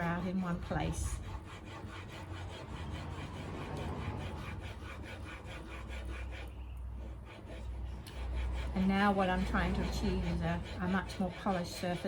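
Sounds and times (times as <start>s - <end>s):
chisel rasping on sharpening stone: 0.0s - 12.0s.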